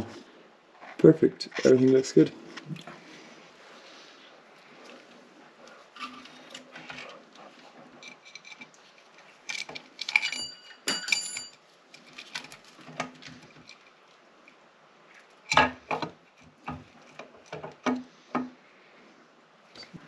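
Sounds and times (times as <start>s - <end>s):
tools clinking on metal: 9.4s - 11.6s.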